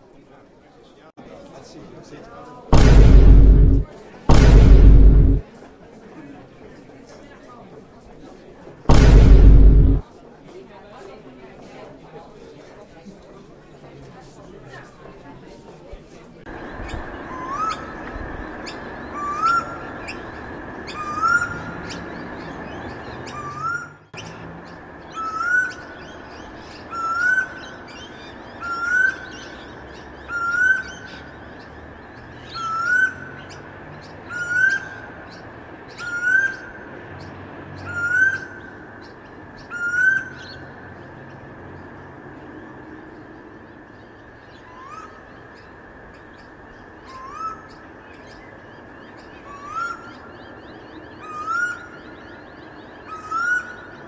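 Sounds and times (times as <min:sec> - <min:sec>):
steady high hum: 0:02.7 - 0:05.4, 0:08.9 - 0:10.0.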